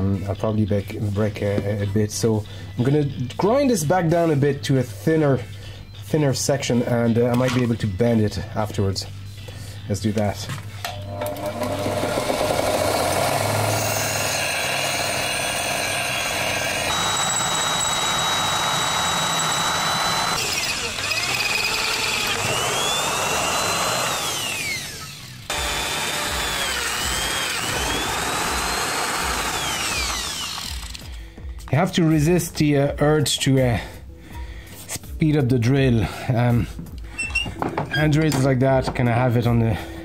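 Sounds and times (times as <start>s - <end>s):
angle grinder grinding steel: 10.9s - 31.2s
electric drill boring holes: 11.0s - 31.2s.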